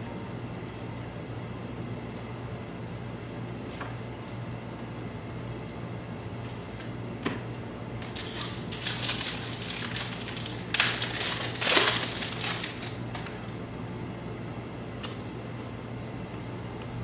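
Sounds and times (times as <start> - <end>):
low steady hum: 0.0 - 17.0
wrapper tearing and crinkling: 8.0 - 13.4.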